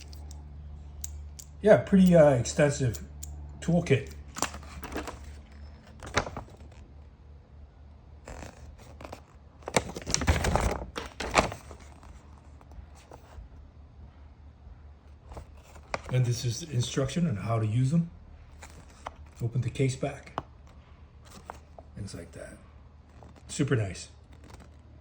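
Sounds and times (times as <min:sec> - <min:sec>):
tool kit clicks and scrapes: 0:00.0 - 0:00.4, 0:04.0 - 0:06.8.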